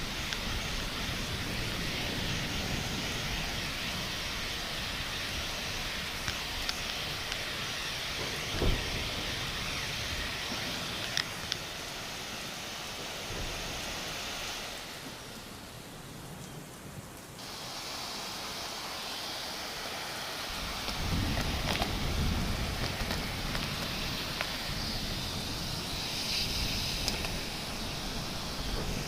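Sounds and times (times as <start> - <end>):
steady rain: 0.0 - 29.0
low roll of thunder: 8.2 - 10.9, 20.6 - 29.0.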